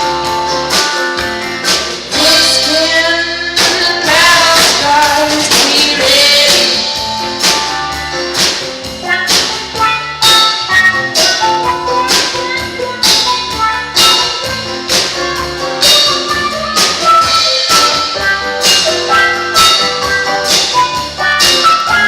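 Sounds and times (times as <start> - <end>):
drum beat: 0.0 - 22.0
banjo through wah-wah pedal: 9.0 - 22.0.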